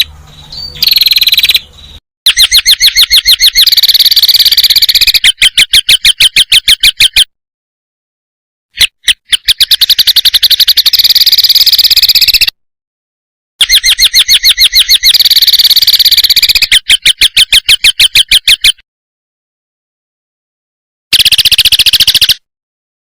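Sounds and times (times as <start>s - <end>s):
songbird rapid repeated notes: 0.0s - 7.3s, 8.8s - 12.6s, 13.6s - 18.8s, 21.1s - 22.4s.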